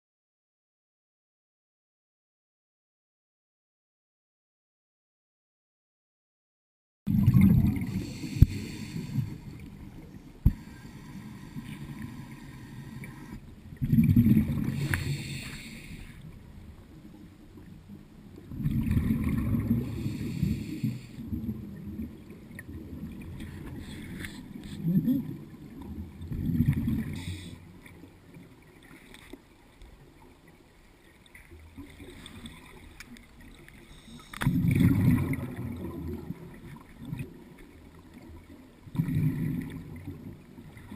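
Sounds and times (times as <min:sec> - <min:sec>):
regulator hiss: 0:14.8 - 0:16.2.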